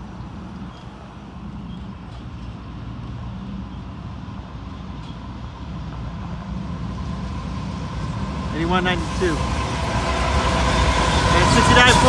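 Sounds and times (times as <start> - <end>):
diesel locomotive engine drone: 0.0 - 12.0.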